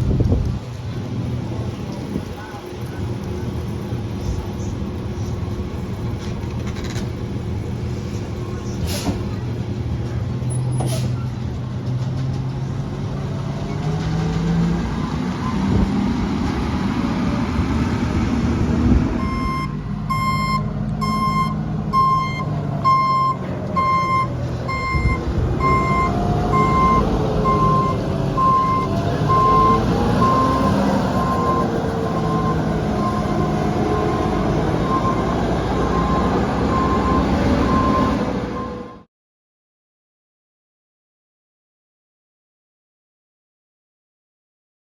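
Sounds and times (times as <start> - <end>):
reversing alarm beeping: 19.2 - 39.1.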